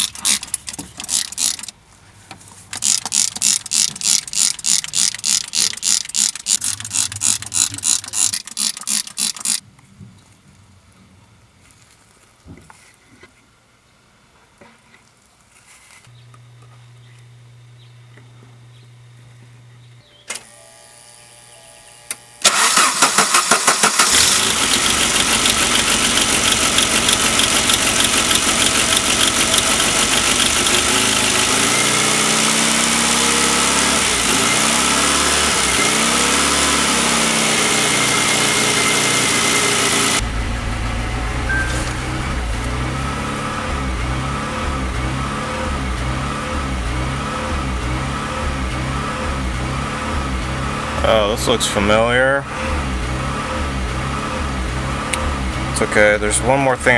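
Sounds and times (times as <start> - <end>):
car engine starter cranking: 0.0 - 1.8, 2.6 - 9.6, 22.4 - 56.9
car engine idling: 22.4 - 56.9.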